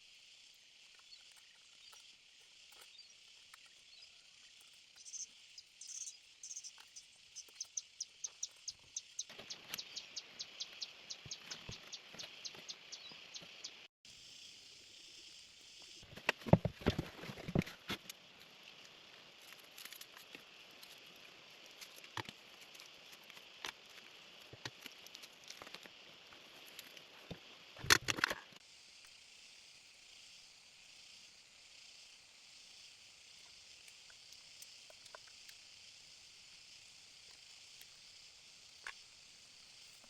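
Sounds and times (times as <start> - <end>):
steady high hiss: 28.6 - 40.0.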